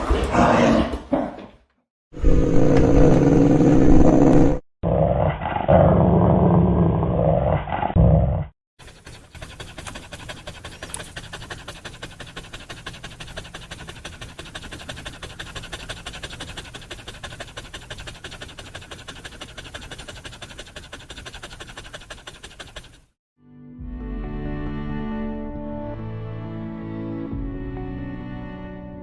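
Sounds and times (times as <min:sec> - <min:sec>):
dog panting: 0:08.8 - 0:23.2.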